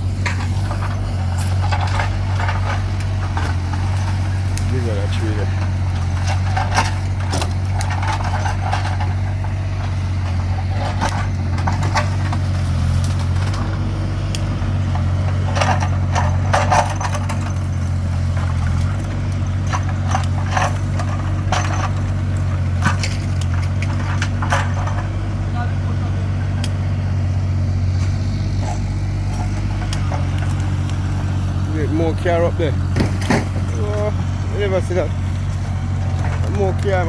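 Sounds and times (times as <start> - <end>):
scrap metal clanking: 0.0 - 13.8, 14.7 - 26.6, 27.2 - 37.0
heavy engine running: 0.0 - 37.0.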